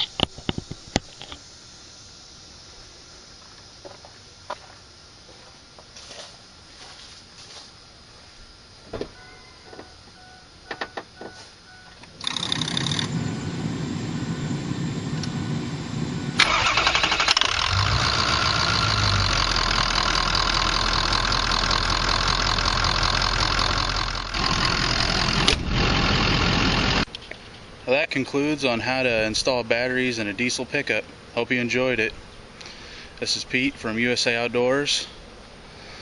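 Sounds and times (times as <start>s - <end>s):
diesel engine cranking on starter: 12.2s - 27.1s
diesel engine idling loudly: 12.2s - 27.1s.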